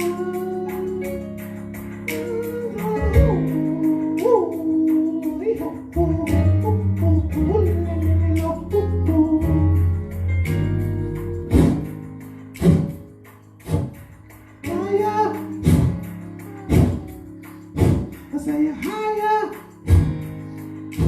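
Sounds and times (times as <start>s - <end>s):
person singing: 0.0s - 10.3s, 14.6s - 19.8s
church-style music with beat: 0.0s - 21.0s.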